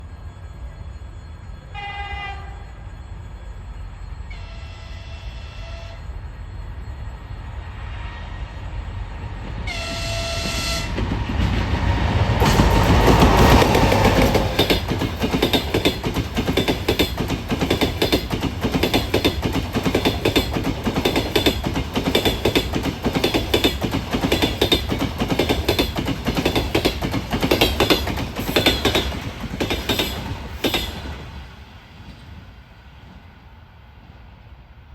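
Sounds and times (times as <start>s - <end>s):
locomotive horn blasts: 1.7s - 2.7s, 9.7s - 11.0s
train wheels knocking over rail joints: 9.7s - 31.3s.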